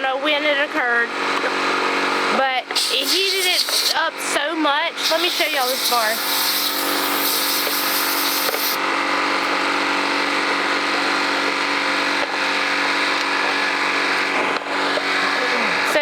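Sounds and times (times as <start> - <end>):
high hiss: 2.8 - 4.0, 5.0 - 8.8.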